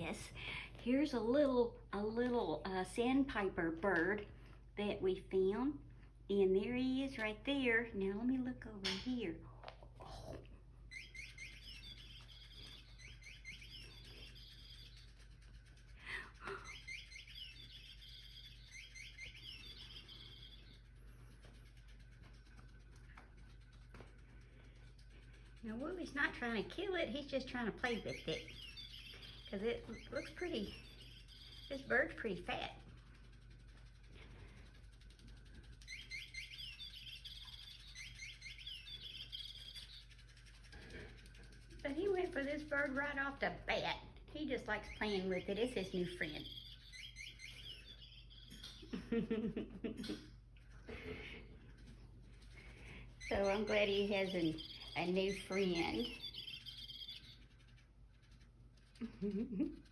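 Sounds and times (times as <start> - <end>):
toy bird rapid high chirps: 10.9 - 24.1, 24.7 - 49.0, 51.8 - 59.1.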